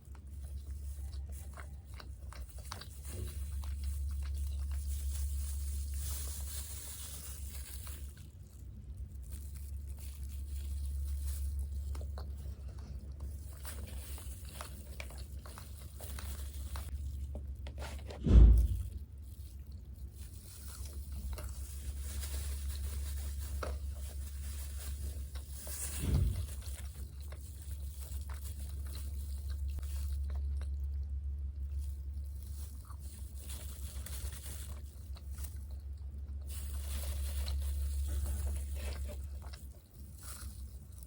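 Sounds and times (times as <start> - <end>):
person chewing crunchy food: 0.0 - 41.0
low hum: 18.0 - 33.9
loud low thump: 18.1 - 19.0, 26.0 - 26.5.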